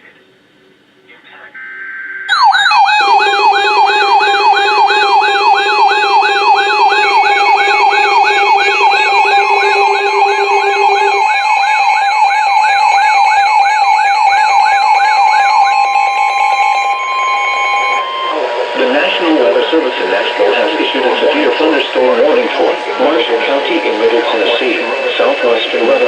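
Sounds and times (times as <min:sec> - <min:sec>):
steady low tone: 0:01.5 - 0:13.6, 0:16.1 - 0:26.0
electronic siren yelping: 0:02.3 - 0:19.4.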